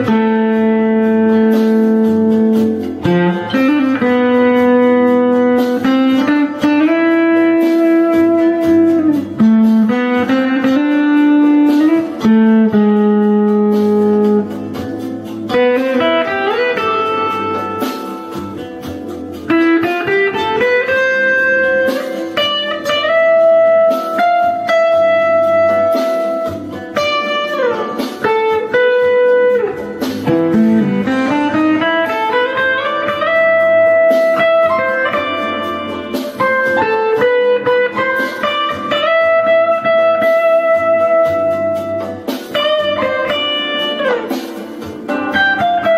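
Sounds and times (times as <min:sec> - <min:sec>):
low accompanying notes: 0:00.0 - 0:45.9
slow guitar solo: 0:00.0 - 0:45.9.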